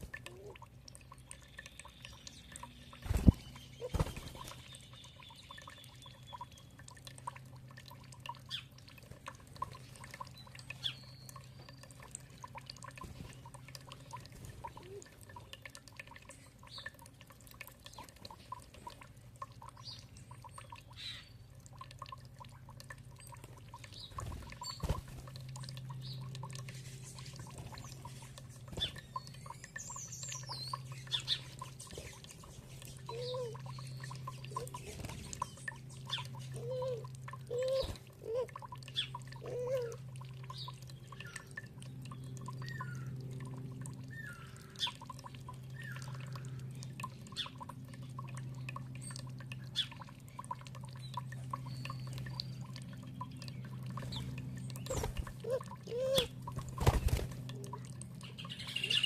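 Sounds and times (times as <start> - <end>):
dripping trickling water: 0.0 - 59.0
low steady hum: 0.0 - 59.0
birds chirping: 0.2 - 7.8, 23.1 - 43.2, 44.0 - 59.0.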